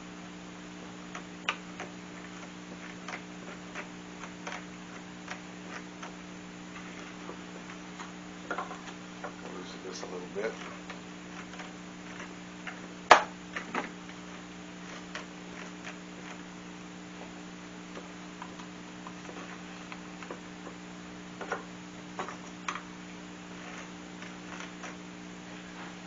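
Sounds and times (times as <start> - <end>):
steady electrical hum: 0.0 - 26.0
clamps and wood clicking and knocking: 1.1 - 9.5, 21.4 - 22.9.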